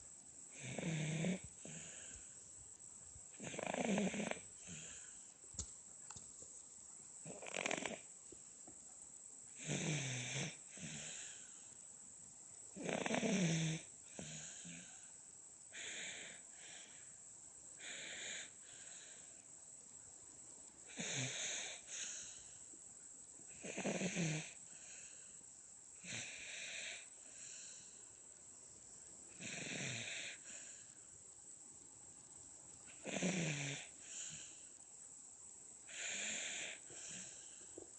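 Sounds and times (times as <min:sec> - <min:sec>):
baby snoring: 0:00.5 - 0:02.1, 0:03.4 - 0:05.2, 0:07.3 - 0:08.0, 0:09.6 - 0:11.6, 0:12.8 - 0:15.1, 0:20.9 - 0:22.1, 0:23.5 - 0:24.6, 0:29.4 - 0:30.4, 0:33.0 - 0:34.4.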